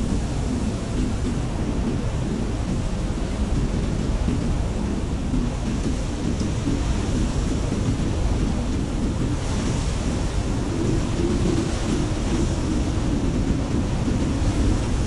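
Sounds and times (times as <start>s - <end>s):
snowstorm wind blowing: 0.0s - 15.0s.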